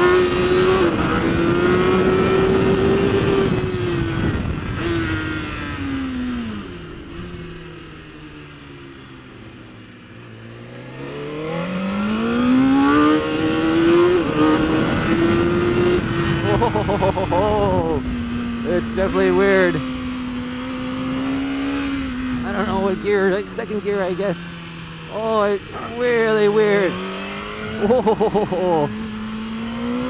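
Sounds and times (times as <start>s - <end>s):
motorcycle engine with gear changes: 0.0s - 30.0s
wind rush: 0.5s - 7.6s.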